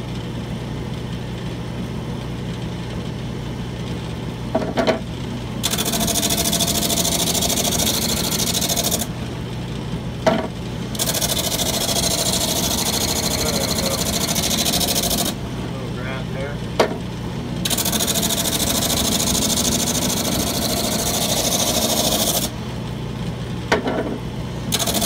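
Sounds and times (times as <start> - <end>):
lathe humming: 5.6 - 9.2, 10.9 - 16.5, 17.6 - 22.7, 24.6 - 25.0.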